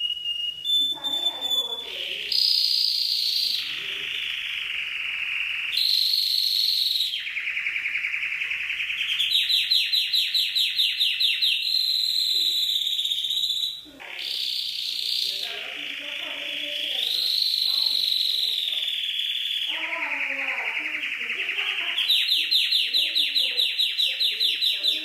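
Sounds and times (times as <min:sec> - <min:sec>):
canary singing trills: 0:00.0 - 0:25.0.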